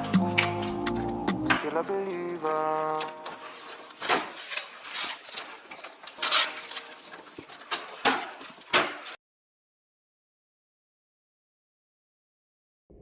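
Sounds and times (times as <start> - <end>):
rustling: 0.0 - 9.2.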